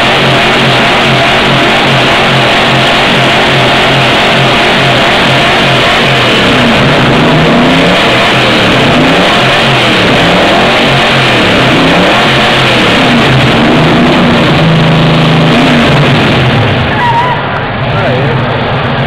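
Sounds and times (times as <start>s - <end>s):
car engine revving: 0.0s - 19.0s.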